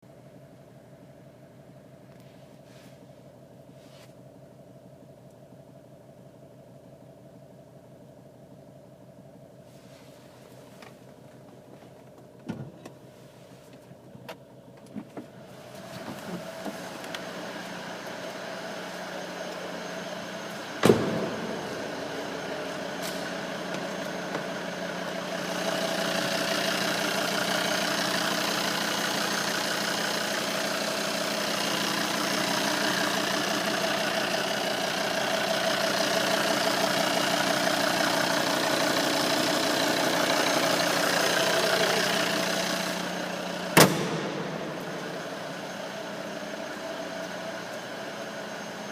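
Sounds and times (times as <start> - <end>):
diesel engine droning: 0.1 - 48.9
sharp thump: 20.8 - 21.6, 43.8 - 44.6.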